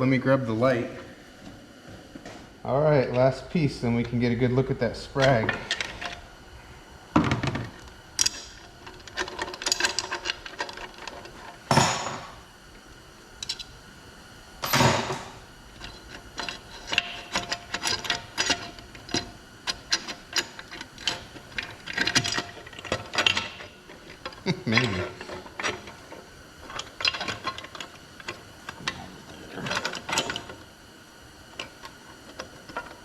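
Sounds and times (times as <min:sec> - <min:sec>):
metal parts clinking and knocking: 0:07.5 - 0:12.3, 0:15.8 - 0:28.4.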